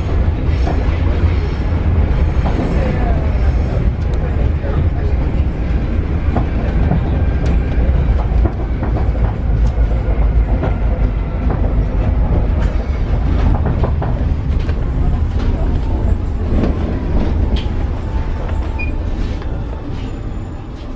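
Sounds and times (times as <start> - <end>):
train rumbling: 0.0 - 20.9.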